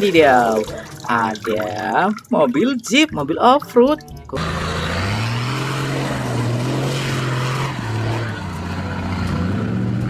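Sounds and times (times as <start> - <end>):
jeep engine running: 4.0 - 10.0.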